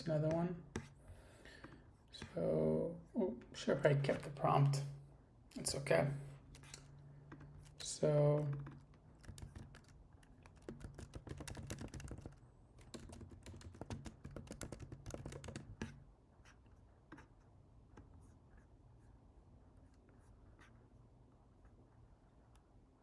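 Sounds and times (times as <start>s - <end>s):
computer keyboard typing: 6.5s - 16.0s.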